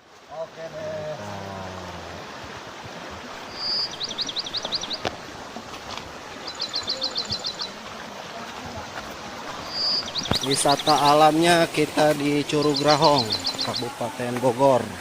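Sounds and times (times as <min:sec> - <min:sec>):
waterfall rushing: 0:00.0 - 0:15.0
small bird singing: 0:03.5 - 0:05.1, 0:06.4 - 0:07.8, 0:09.6 - 0:11.3, 0:12.4 - 0:14.0.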